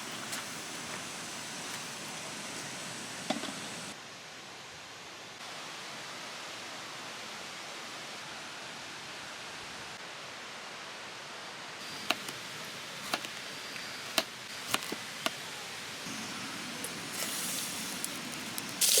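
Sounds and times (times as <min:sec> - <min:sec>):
steady rushing hiss: 0:00.0 - 0:04.0, 0:09.9 - 0:19.0.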